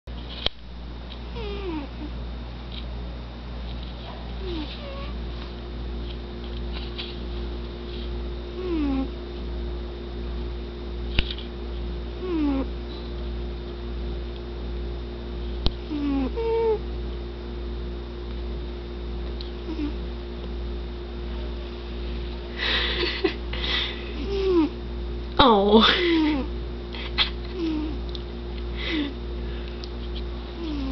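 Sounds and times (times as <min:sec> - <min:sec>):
steady low hum: 0:00.1 - 0:30.9
cat snoring: 0:01.3 - 0:02.1, 0:04.4 - 0:05.1, 0:08.6 - 0:09.1, 0:12.2 - 0:12.7, 0:15.9 - 0:16.8, 0:19.6 - 0:20.0, 0:24.2 - 0:24.7, 0:27.5 - 0:28.0, 0:30.6 - 0:30.9.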